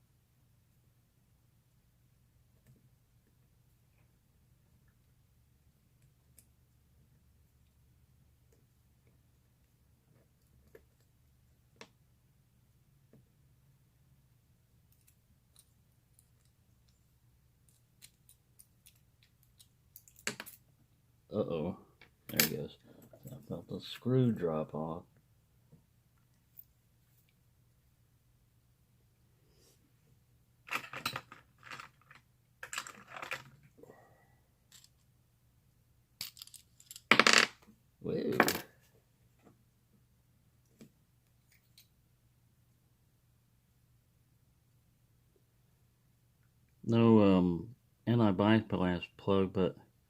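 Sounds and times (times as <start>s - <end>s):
padlock parts clicking and rattling: 17.6s - 20.6s, 30.7s - 33.6s, 34.7s - 35.0s, 36.2s - 37.1s
small metal clicks: 17.6s - 20.6s.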